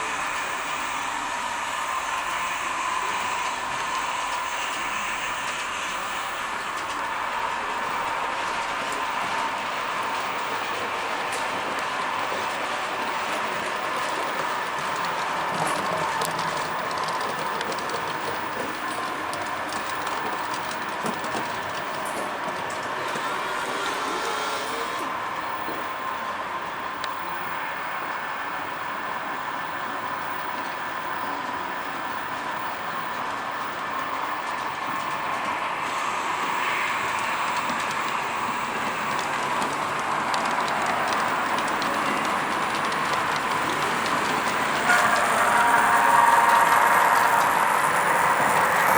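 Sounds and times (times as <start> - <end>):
wheels clicking over rails: 0.0 - 28.6, 30.6 - 48.9
model trains humming: 0.0 - 48.9
light ticking: 37.4 - 48.9.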